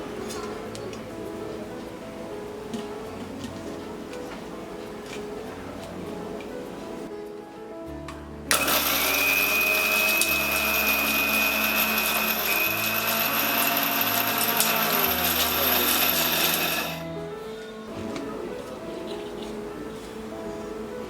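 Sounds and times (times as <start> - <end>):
soft background music: 0.0 - 21.0
electric spice grinder whining: 8.5 - 17.0.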